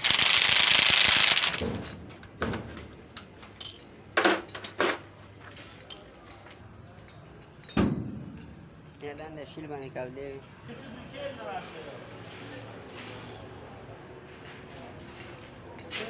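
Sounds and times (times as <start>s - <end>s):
metallic clanks of tools: 1.6s - 9.3s.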